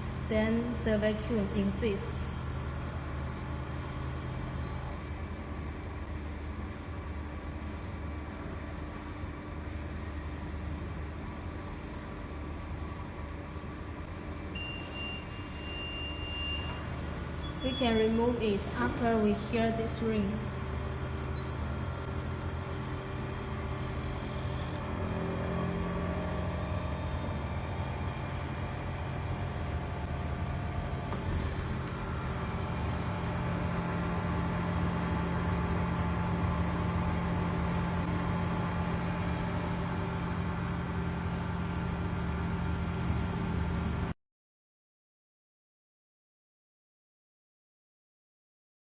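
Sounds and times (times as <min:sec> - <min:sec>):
low electrical hum: 0:00.0 - 0:44.2
whir of air from blowers and fans: 0:00.0 - 0:44.2.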